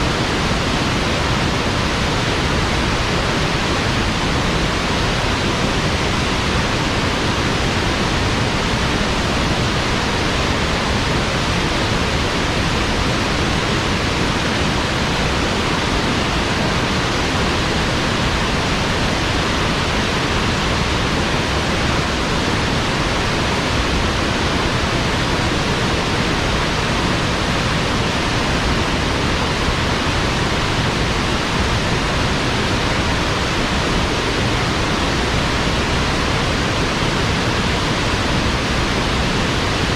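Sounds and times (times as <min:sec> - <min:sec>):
steady rushing noise: 0:00.0 - 0:39.9.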